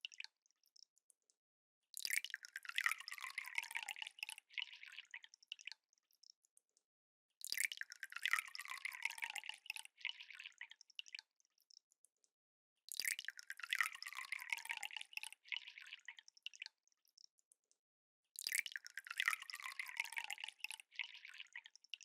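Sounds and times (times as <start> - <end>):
liquid pouring from a bottle: 2.0 - 5.2, 7.4 - 11.2, 12.9 - 16.2, 18.4 - 21.7
liquid dripping: 2.0 - 6.8, 7.4 - 12.3, 12.9 - 17.8, 18.4 - 22.0.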